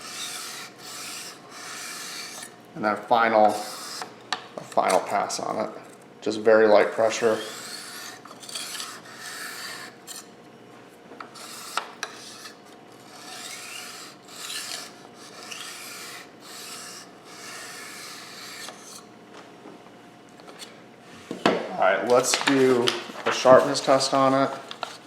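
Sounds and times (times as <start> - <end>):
knife blade on sharpening stone: 11.4 - 19.0.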